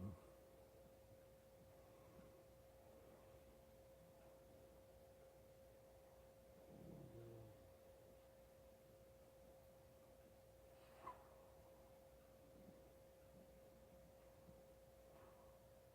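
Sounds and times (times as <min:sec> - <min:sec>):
low snore: 0:06.7 - 0:07.6.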